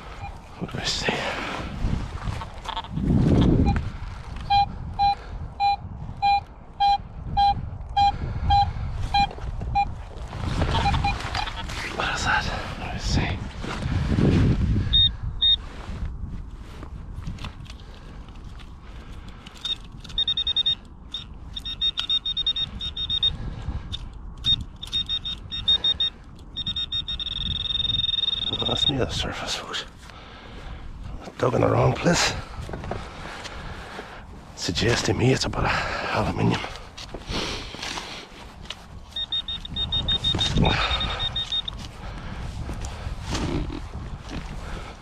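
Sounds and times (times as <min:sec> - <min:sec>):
metal detector beeps: 0:00.1 - 0:00.4, 0:03.6 - 0:03.8, 0:04.4 - 0:10.0, 0:10.7 - 0:11.6, 0:14.9 - 0:15.6, 0:19.6 - 0:29.3, 0:39.0 - 0:41.9
rumbling of soil and hands: 0:08.9 - 0:14.8, 0:15.6 - 0:20.0, 0:28.5 - 0:45.0.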